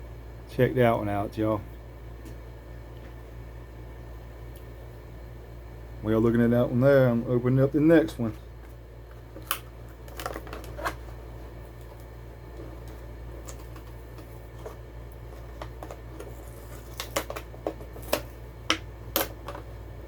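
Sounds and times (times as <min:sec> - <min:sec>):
steady low hum: 0:00.0 - 0:20.0
plastic and cardboard crackling: 0:09.2 - 0:18.4.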